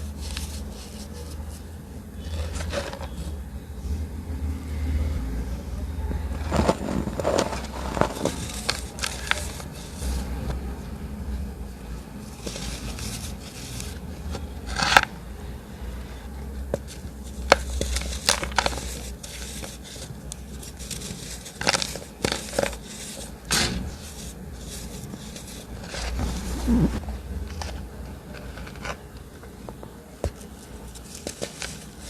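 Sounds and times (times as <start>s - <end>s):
steady low hum: 0.0s - 32.0s
chalk crumbling and crunching: 6.5s - 10.3s, 16.8s - 26.7s.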